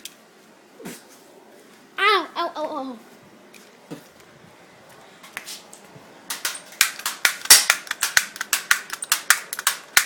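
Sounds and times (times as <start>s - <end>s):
toy cap guns cracking: 6.3s - 10.0s.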